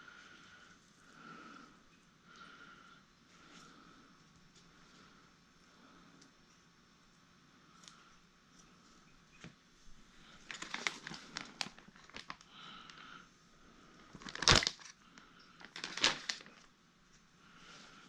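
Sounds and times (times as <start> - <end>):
crinkling handling noises: 8.5 - 13.2, 13.9 - 18.0.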